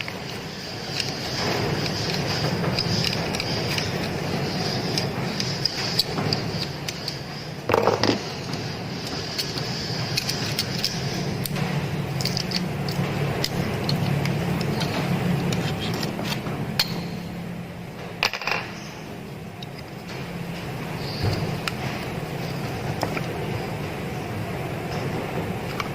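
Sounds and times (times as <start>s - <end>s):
steady low hum: 0.0s - 25.9s
metal tools clinking and scraping: 9.1s - 17.2s, 18.2s - 18.8s.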